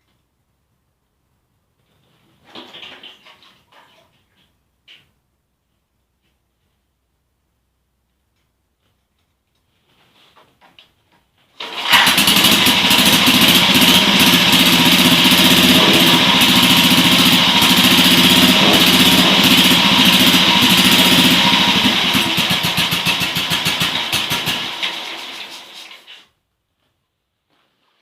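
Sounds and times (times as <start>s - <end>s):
motorcycle engine starting and running: 11.6s - 26.1s.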